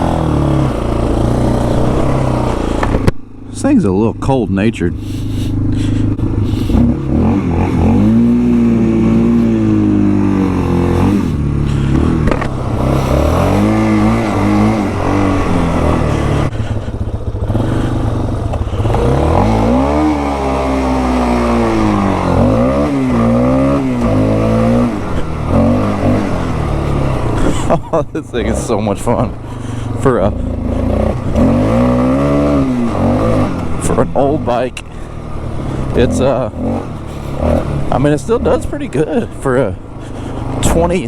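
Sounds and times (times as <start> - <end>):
atv engine revving: 0.0 - 41.0.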